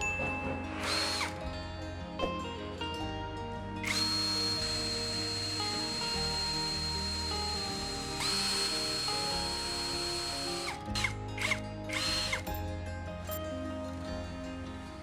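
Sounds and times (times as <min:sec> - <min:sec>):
power tool motor whining: 0:00.0 - 0:01.4, 0:03.8 - 0:12.6, 0:13.2 - 0:15.0
background music: 0:00.0 - 0:15.0.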